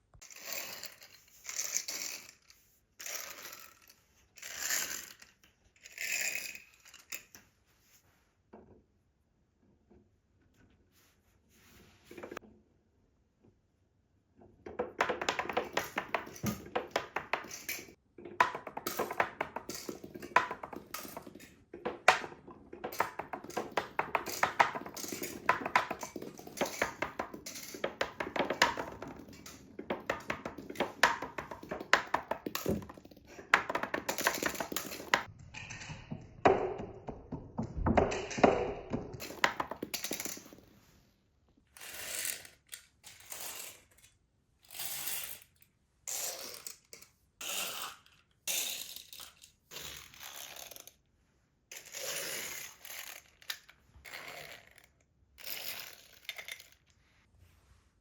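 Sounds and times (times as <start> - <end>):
toys clacking down wooden run: 14.7 - 40.6.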